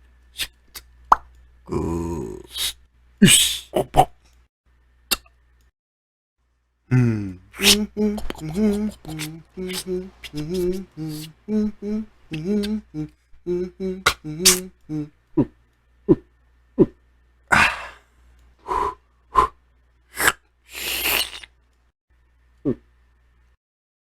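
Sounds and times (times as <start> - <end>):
man humming a tune: 1.7 - 4.0, 6.9 - 15.5
breathy hissing bursts: 7.5 - 13.1, 20.2 - 21.5
low mouth pops: 7.6 - 12.8, 14.0 - 14.9.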